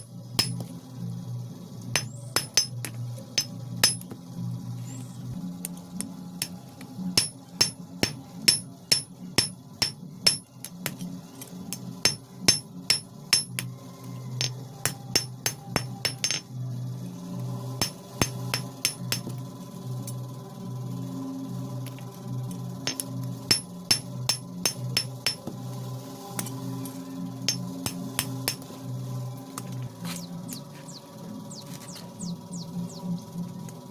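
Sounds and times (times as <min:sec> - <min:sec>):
hammer striking iron on anvil: 0:00.0 - 0:00.7, 0:01.9 - 0:04.2, 0:06.0 - 0:13.7, 0:14.4 - 0:16.5, 0:17.8 - 0:19.4, 0:22.8 - 0:25.6, 0:27.4 - 0:28.7
low hum: 0:00.0 - 0:33.9.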